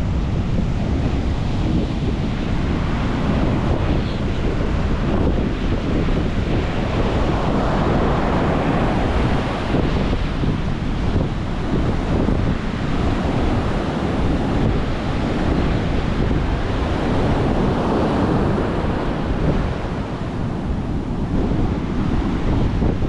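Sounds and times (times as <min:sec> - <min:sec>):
ocean surf breaking: 0:00.0 - 0:23.0
wind buffeting microphone: 0:00.0 - 0:23.0.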